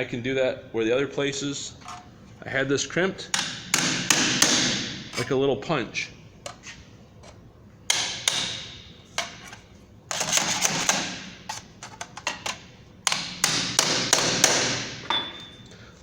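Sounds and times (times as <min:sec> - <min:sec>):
hammer striking steel bar: 0:03.4 - 0:05.0, 0:07.9 - 0:08.9, 0:13.1 - 0:15.4.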